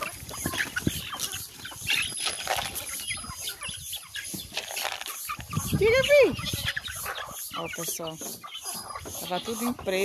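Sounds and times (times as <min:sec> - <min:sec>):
scratching and rustling: 0:00.0 - 0:07.4
chicks cheeping: 0:00.0 - 0:10.0
hen clucking: 0:00.0 - 0:10.0.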